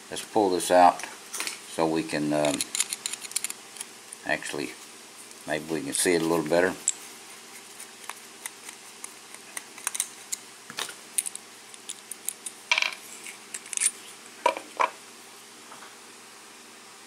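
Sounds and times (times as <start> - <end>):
small metal lock parts clicking: 2.4 - 3.9, 9.5 - 10.4, 11.2 - 12.6, 13.5 - 14.0.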